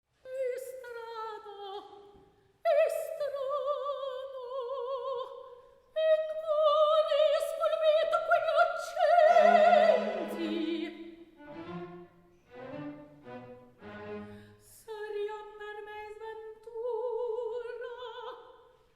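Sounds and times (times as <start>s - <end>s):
operatic solo voice singing: 6.2s - 11.1s.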